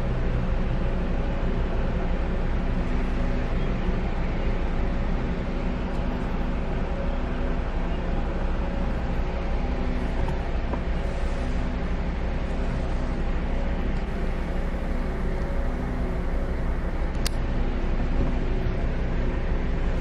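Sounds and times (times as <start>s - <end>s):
car driving: 14.1s - 17.0s.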